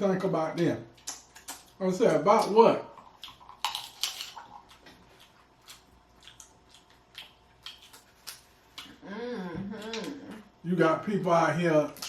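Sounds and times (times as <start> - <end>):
person chewing wetly: 0.9 - 9.0.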